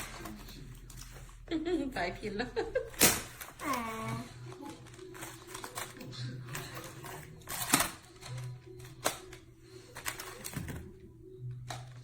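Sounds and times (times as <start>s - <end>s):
plastic toy pieces clattering: 4.5s - 10.8s.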